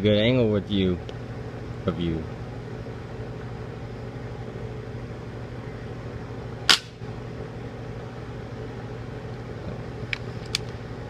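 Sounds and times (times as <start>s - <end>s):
steady low hum: 0.0s - 11.0s
air rifle shot: 6.7s - 7.0s.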